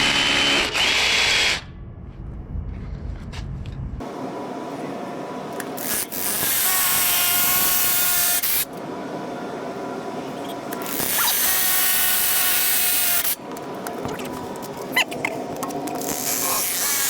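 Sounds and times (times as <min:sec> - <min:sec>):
power drill boring into concrete: 0:00.0 - 0:01.7.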